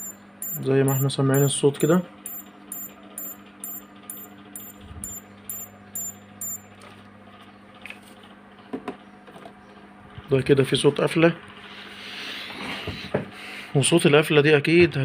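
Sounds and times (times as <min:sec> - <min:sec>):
steady low hum: 0:00.0 - 0:06.8.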